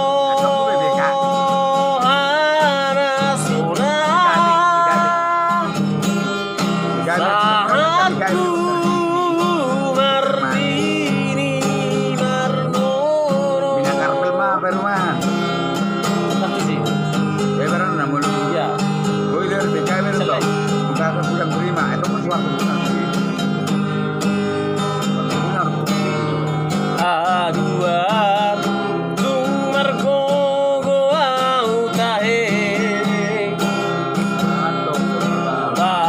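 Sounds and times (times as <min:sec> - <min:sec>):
guitar accompaniment: 0:00.0 - 0:36.0.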